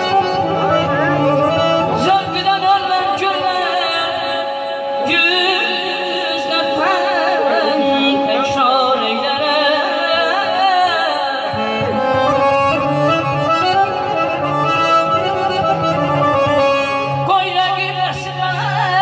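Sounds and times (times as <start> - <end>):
accordion playing: 0.0 - 18.9
person singing with ornamentation: 0.9 - 12.2.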